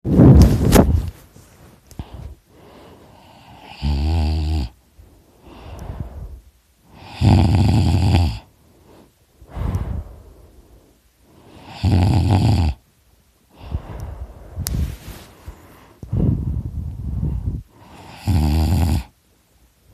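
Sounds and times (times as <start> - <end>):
quiet breaths out: 1.2 - 3.8, 4.8 - 7.0, 8.4 - 11.8, 13.4 - 18.2
person snoring loudly: 3.3 - 4.8, 6.9 - 8.5, 11.6 - 12.8, 17.1 - 19.1.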